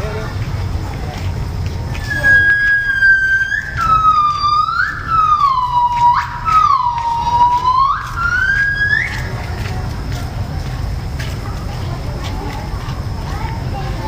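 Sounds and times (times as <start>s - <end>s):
gibbon whooping call: 2.0s - 9.1s.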